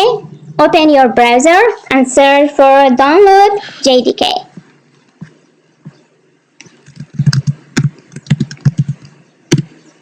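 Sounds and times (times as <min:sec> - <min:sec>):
keyboard typing: 0:06.6 - 0:09.8.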